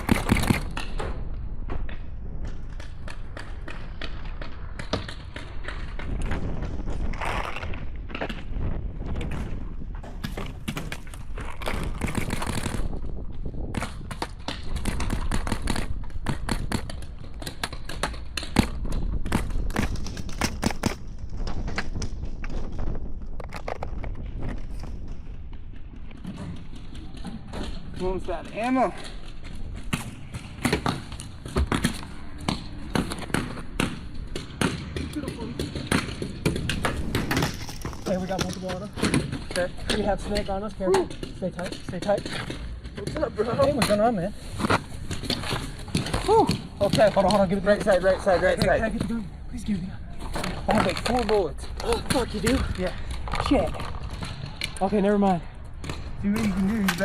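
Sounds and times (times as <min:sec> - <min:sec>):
paintball markers firing: 0:00.0 - 0:01.2, 0:10.2 - 0:24.6
wind rumble on microphone: 0:00.0 - 0:28.5
wind buffeting microphone: 0:00.0 - 0:57.0.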